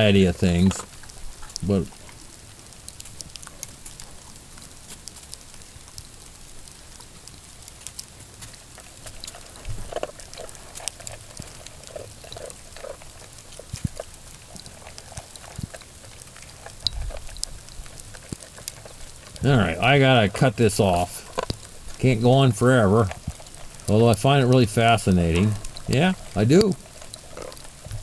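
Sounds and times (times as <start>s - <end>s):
freezing rain ticks and drips: 0.0s - 28.0s
farm animal calls: 18.5s - 28.0s.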